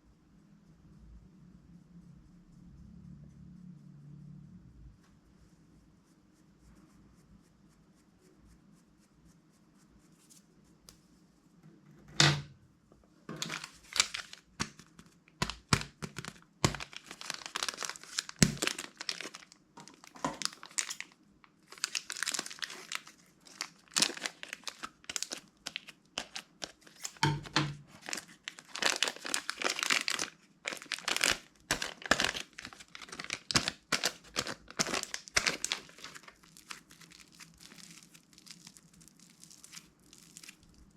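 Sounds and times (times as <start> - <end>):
slime squishing by hand: 13.3 - 40.9.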